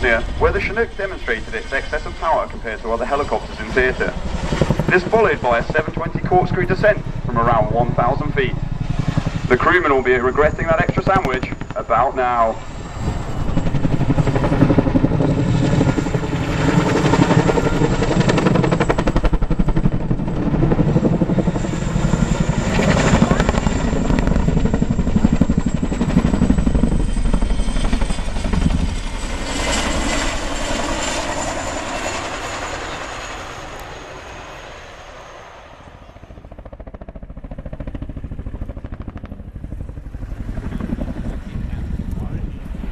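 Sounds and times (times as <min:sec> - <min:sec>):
helicopter rotor blades beating: 0:00.0 - 0:42.9
high whine: 0:04.8 - 0:14.5.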